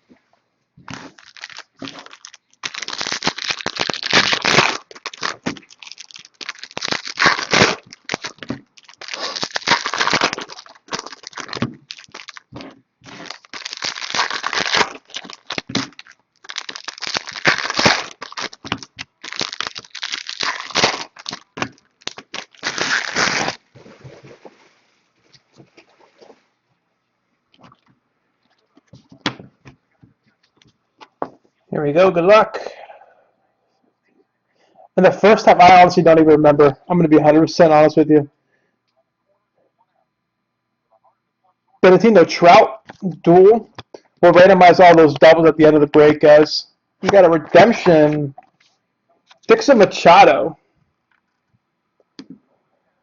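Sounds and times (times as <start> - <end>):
plastic packaging crinkling and tearing: 0.9 - 24.6.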